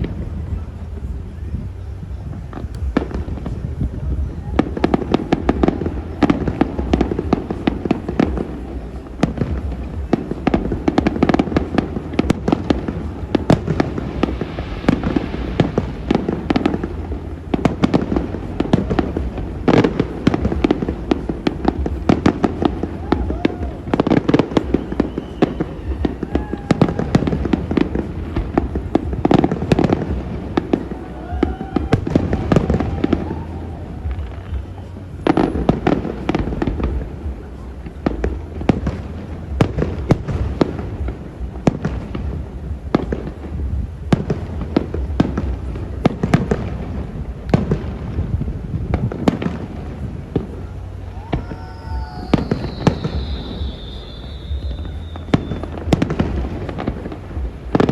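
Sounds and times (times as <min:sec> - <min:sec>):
fireworks bangs and crackling pops: 0:00.0 - 0:57.9
people's voices: 0:00.0 - 0:57.9
high falling whistle: 0:22.9 - 0:27.4, 0:51.1 - 0:55.9.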